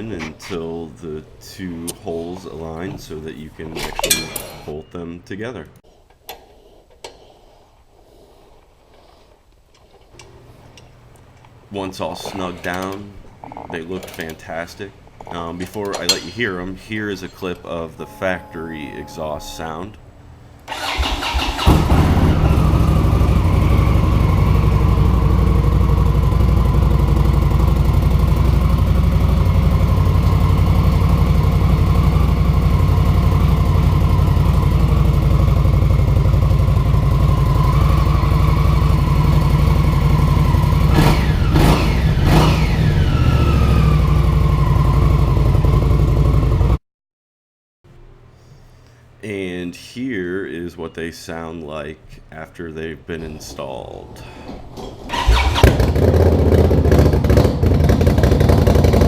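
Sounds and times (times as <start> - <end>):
motorcycle engine starting and idling: 0.0 - 6.4, 20.7 - 46.8, 54.5 - 59.0
motorcycle engine revving: 20.7 - 46.8, 55.1 - 59.0.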